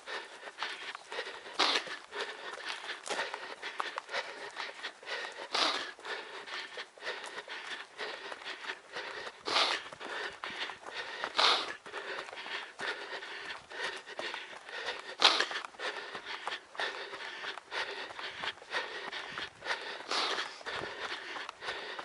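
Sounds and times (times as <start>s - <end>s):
footfalls crunching on trail: 0.0s - 22.0s
runner breathing hard: 0.0s - 22.0s.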